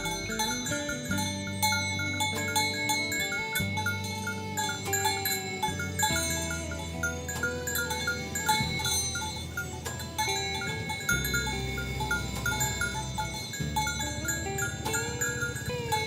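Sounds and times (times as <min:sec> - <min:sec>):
bell-like melody: 0:00.0 - 0:16.0
steady low tone: 0:00.0 - 0:16.0.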